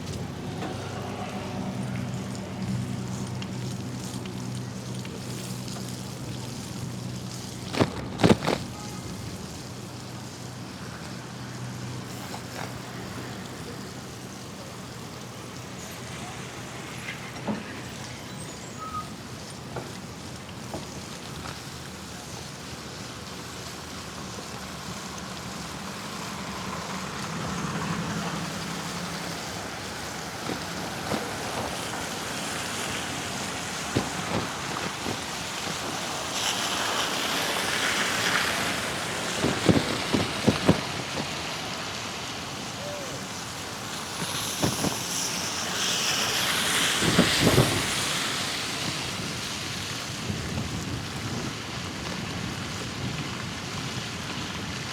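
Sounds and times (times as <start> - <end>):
street and tyre noise: 0.0 - 54.9
wind buffeting microphone: 28.4 - 54.9.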